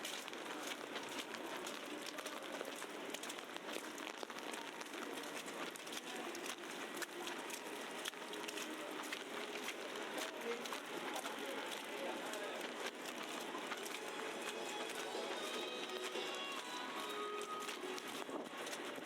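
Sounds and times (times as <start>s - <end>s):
small crackling ticks: 0.0s - 19.0s
faint distant voices: 4.0s - 19.0s.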